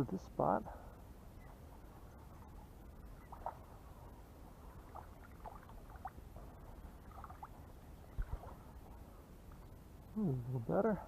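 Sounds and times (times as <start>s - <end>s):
low steady rumble: 0.0s - 11.0s
faint chirps: 0.8s - 5.4s.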